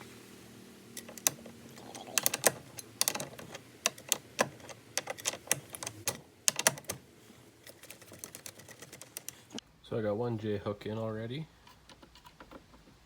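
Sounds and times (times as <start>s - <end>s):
metal hooks clicking and clinking: 1.0s - 7.0s.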